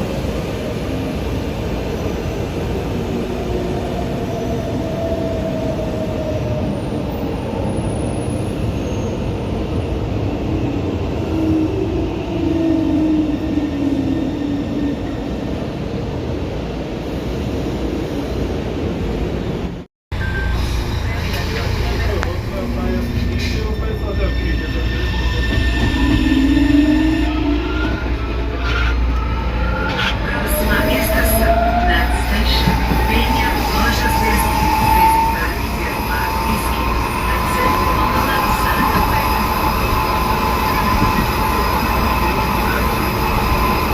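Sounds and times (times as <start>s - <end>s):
train running noise: 20.1s - 43.9s.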